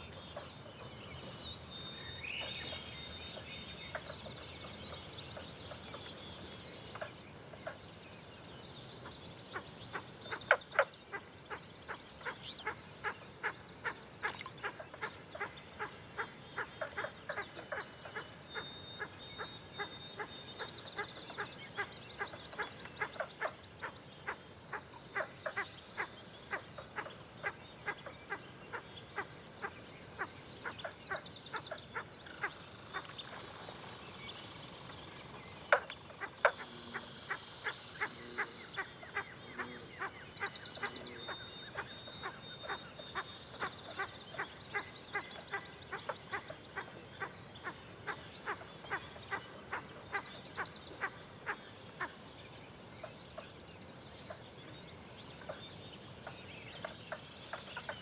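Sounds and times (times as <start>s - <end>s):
high trilling birdsong: 32.2s - 44.1s
duck-like clucking calls: 35.7s - 39.8s, 40.4s - 41.4s.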